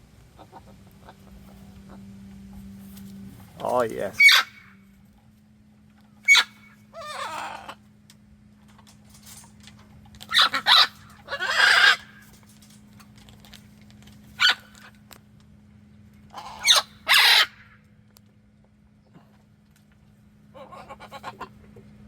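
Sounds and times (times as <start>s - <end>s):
steady low hum: 0.0s - 22.0s
parrot squawking: 4.1s - 4.8s, 6.2s - 7.8s, 10.3s - 12.2s, 14.4s - 14.9s, 16.3s - 17.8s, 20.6s - 21.5s.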